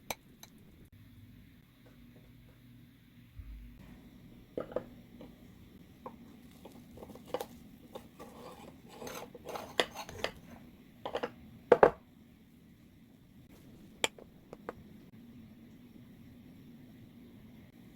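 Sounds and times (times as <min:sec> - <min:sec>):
utensils clinking against a bowl: 0:06.1 - 0:12.0.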